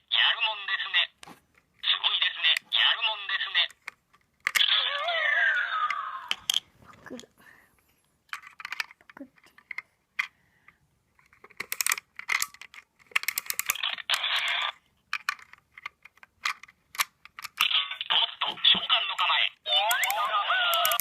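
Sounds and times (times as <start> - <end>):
toy pieces clicking and clinking: 3.4 - 6.7, 8.3 - 10.4, 11.2 - 21.0.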